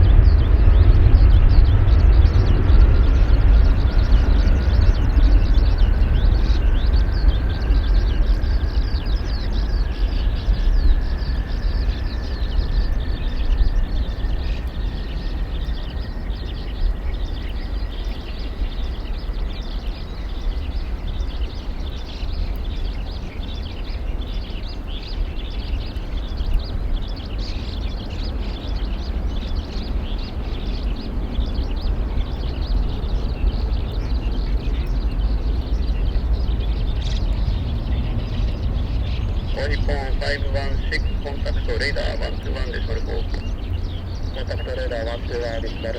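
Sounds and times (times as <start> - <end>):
small birds chirping: 0.0 - 45.9
steady low rumble: 0.0 - 45.9.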